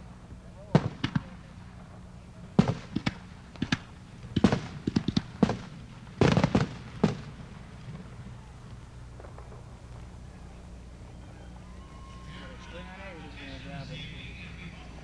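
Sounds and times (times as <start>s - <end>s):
fireworks bangs and pops: 0.0s - 11.7s.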